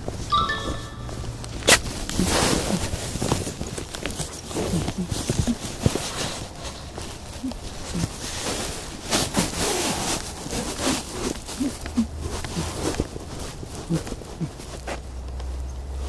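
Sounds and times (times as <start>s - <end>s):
jacket fabric rustling: 0.0s - 15.0s
brief high chirp: 0.3s - 1.3s.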